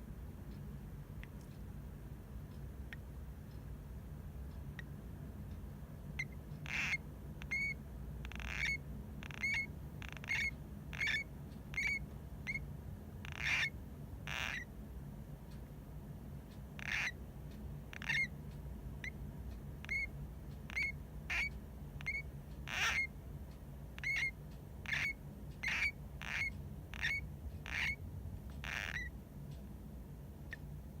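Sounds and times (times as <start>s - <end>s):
hamster squeaking: 6.2s - 14.7s, 16.8s - 17.2s, 17.9s - 18.4s, 19.8s - 23.2s, 24.0s - 29.2s.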